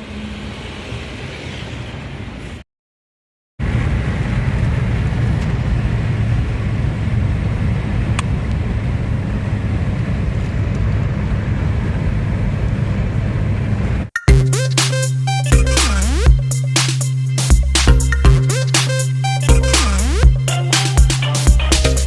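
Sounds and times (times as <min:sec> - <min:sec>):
music with a beat: 0:14.2 - 0:22.0.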